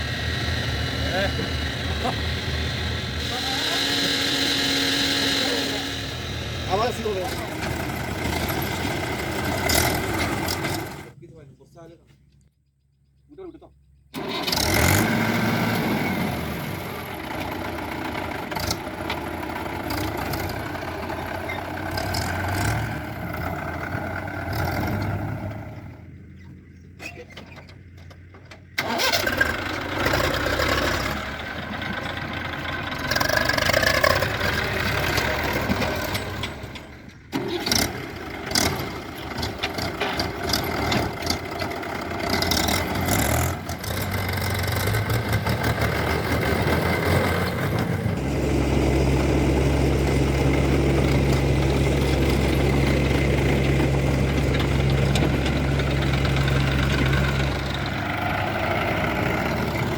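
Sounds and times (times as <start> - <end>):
diesel engines of heavy machinery: 0.0 - 59.9
knocks and clanks: 33.4 - 48.3.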